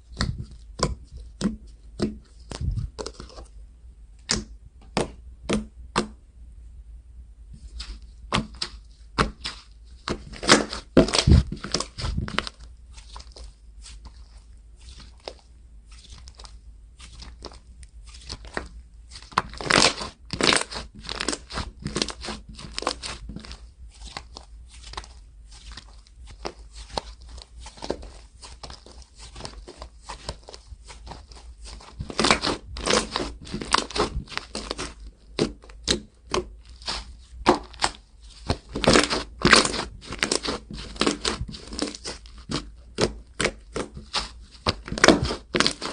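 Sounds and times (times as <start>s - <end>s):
slime crackling and popping: 7.8s - 45.9s.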